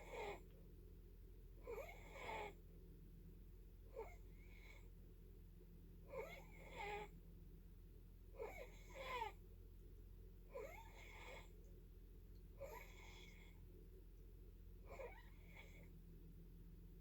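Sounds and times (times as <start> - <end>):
wheezy snoring: 0.0 - 0.4, 1.6 - 2.6, 3.9 - 4.9, 6.1 - 7.1, 8.4 - 9.4, 10.5 - 11.5, 12.6 - 13.6, 14.9 - 15.9.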